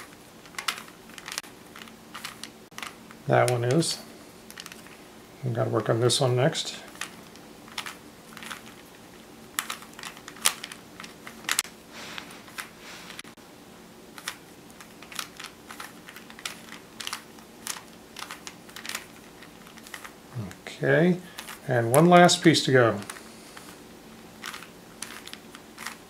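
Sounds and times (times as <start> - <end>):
puzzle cube clicking and turning: 0.0 - 3.8, 4.4 - 5.0, 6.9 - 11.6, 14.2 - 20.2, 21.4 - 21.7, 24.4 - 26.0.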